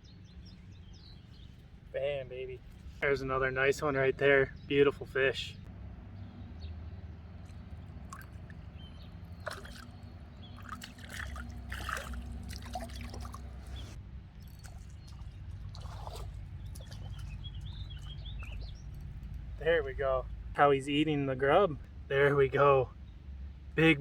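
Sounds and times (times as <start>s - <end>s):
water trickling and sloshing: 6.7s - 19.6s.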